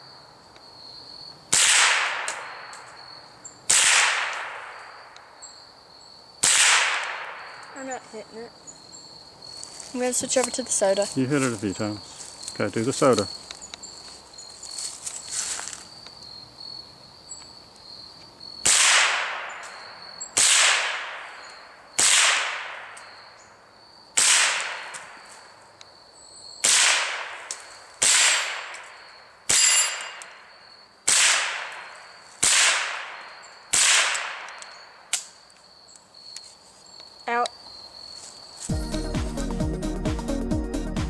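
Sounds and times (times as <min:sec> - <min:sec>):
crickets chirping: 0:00.0 - 0:39.5
rifle shots: 0:01.5 - 0:02.6, 0:03.7 - 0:04.8, 0:06.4 - 0:07.5, 0:18.6 - 0:19.6, 0:20.4 - 0:21.3, 0:22.0 - 0:22.9, 0:24.2 - 0:25.1, 0:26.6 - 0:28.9, 0:31.1 - 0:34.6.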